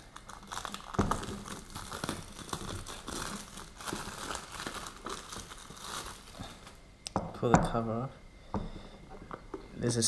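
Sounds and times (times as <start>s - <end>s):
packaging crinkling and rustling: 0.0s - 6.8s.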